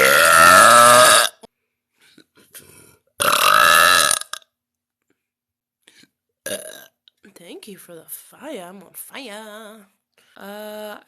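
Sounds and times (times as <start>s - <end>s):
woman burping: 0.0s - 1.5s, 3.2s - 4.5s, 6.4s - 7.0s.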